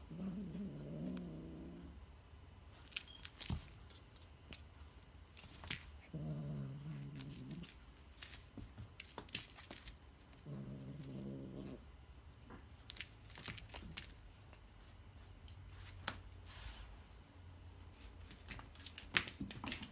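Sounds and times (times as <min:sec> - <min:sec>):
cat growling: 0:00.0 - 0:02.0, 0:06.0 - 0:07.8, 0:10.4 - 0:11.9.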